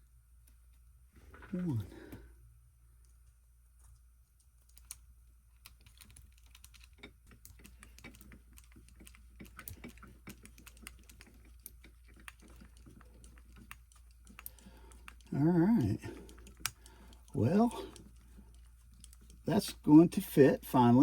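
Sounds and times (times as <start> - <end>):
small parts clicking and tapping: 3.0 - 19.8.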